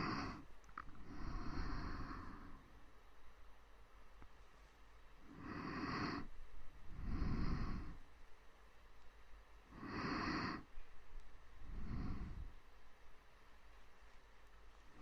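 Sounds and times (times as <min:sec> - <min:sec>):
person breathing softly: 0:00.0 - 0:02.8, 0:05.2 - 0:08.1, 0:09.7 - 0:12.8.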